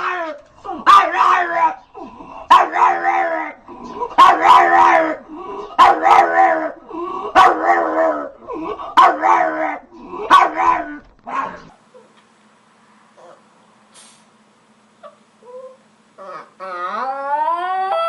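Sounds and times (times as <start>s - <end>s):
dog howl-like barking: 0.0s - 1.8s, 2.5s - 5.2s, 5.8s - 8.4s, 9.0s - 11.8s, 15.4s - 18.0s.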